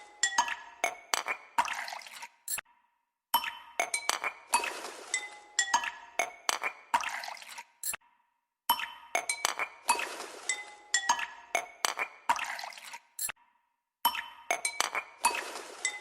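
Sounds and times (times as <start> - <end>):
tinkling glass-like chime music: 15.4 - 16.0.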